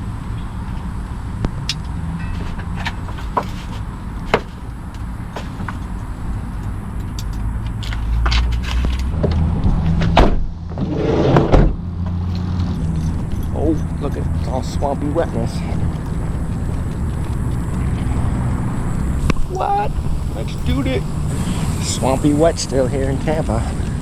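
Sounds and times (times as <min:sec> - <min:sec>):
car engine idling: 0:11.8 - 0:24.0
dog leash clicking and rattling: 0:12.3 - 0:14.0, 0:15.5 - 0:18.1.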